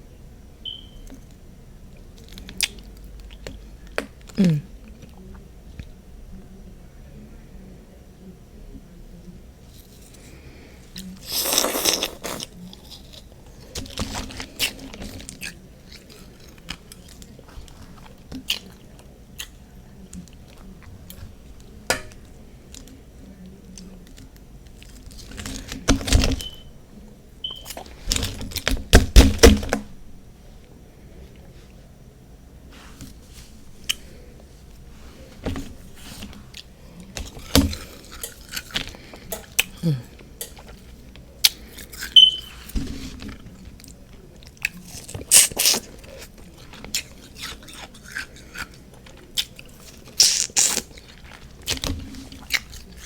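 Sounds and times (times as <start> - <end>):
chewing crackles and clicks: 2.0 - 4.4, 11.0 - 21.8, 43.6 - 53.0.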